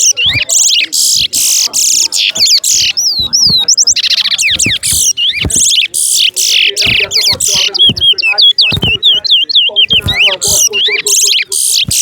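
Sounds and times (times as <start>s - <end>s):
finch singing buzzy trills: 0.0s - 12.0s.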